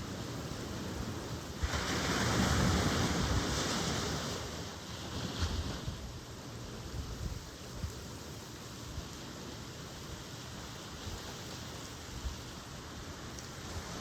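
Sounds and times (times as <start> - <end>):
background surf wash: 0.0 - 14.0
wind rumbling on microphone: 0.0 - 14.0
wave breaking: 1.6 - 6.0.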